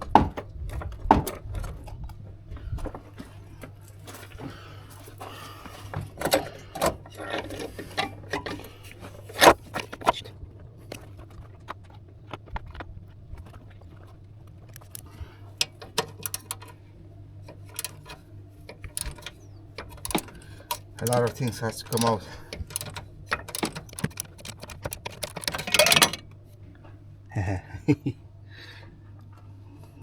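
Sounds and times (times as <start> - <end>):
steady low hum: 1.5 - 30.0
hand tools clicking and knocking: 14.7 - 16.8, 17.5 - 26.4.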